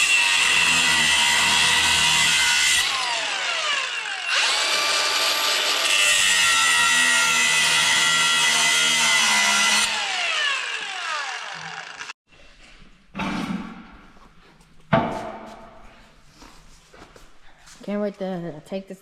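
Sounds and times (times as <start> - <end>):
electric power tool whining: 0.0 - 12.2
sharp knocks: 14.9 - 15.8.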